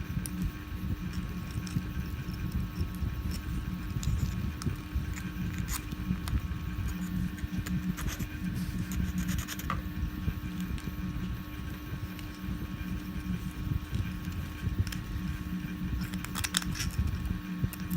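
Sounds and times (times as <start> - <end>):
steady low hum: 0.0 - 17.9
hand tools scraping plastic: 1.1 - 9.9.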